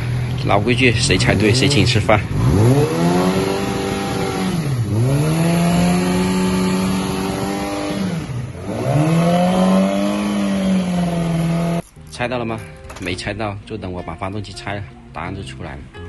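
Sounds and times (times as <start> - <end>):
motorcycle engine revving: 0.0 - 11.9.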